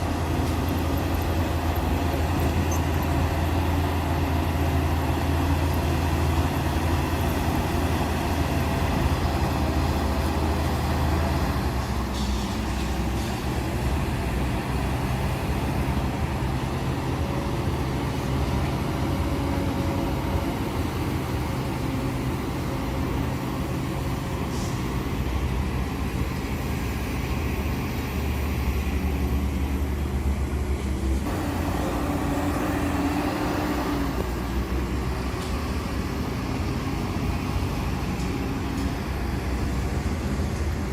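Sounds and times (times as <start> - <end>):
heavy diesel engine droning: 0.0 - 40.9.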